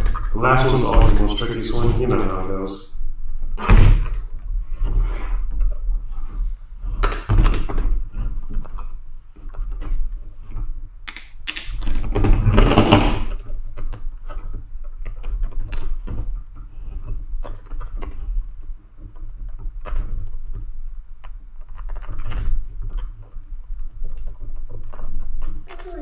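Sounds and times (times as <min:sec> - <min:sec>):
handling noise: 0:00.0 - 0:02.8.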